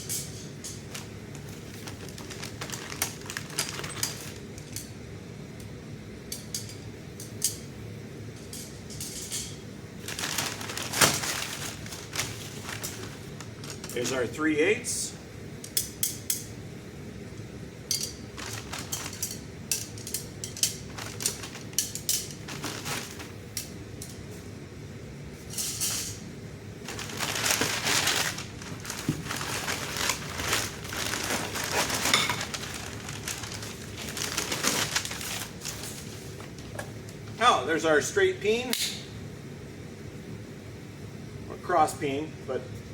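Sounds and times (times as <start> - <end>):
rustling handling noise: 0.2 - 4.8, 8.4 - 15.0, 17.9 - 24.2, 26.8 - 37.5
metal tools clinking: 31.4 - 32.8.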